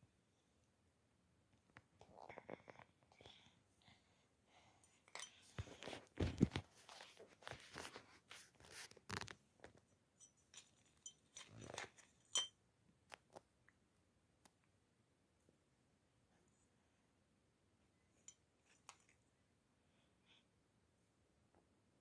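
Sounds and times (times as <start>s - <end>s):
handling small objects: 5.0s - 13.4s.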